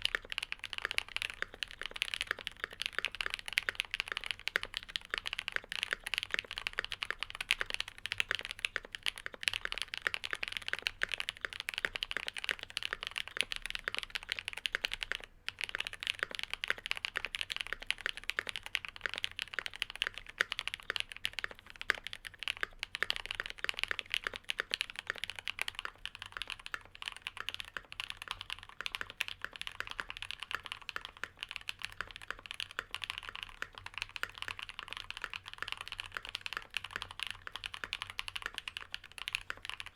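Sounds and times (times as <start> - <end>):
mechanical keyboard typing: 0.0 - 39.9.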